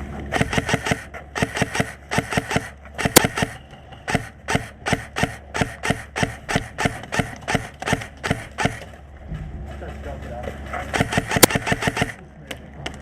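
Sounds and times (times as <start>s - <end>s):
sharp crack: 0.3s - 8.9s, 10.9s - 12.2s.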